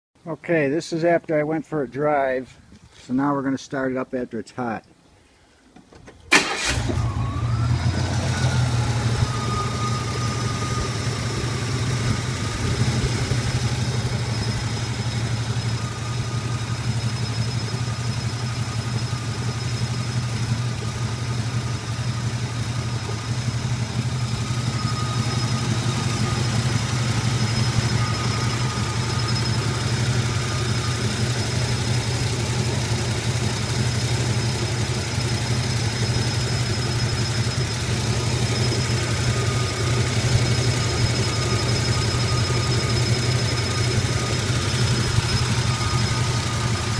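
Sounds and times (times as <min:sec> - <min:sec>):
car engine starting and idling: 0:05.6 - 0:46.9
turbo whistle: 0:08.4 - 0:20.2, 0:23.8 - 0:32.0, 0:35.9 - 0:46.9.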